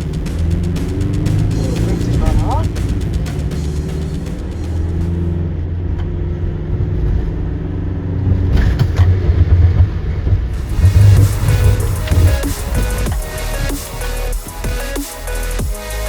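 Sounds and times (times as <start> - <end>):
heavy low thumps: 0.0 - 5.4, 9.6 - 14.9
engine and road rumble: 0.0 - 13.7.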